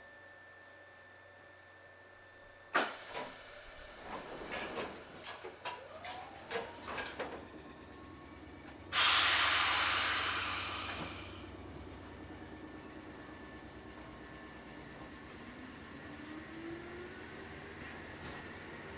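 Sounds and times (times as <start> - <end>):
compressed air hiss: 8.9 - 11.4.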